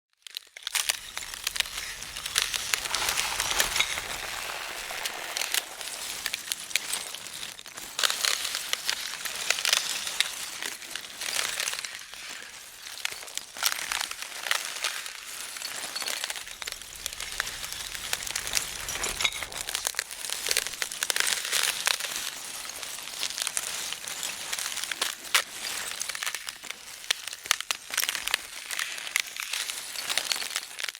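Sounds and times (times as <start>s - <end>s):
rocks and debris falling and clattering: 0.2s - 30.9s
ground cracking: 0.3s - 30.9s.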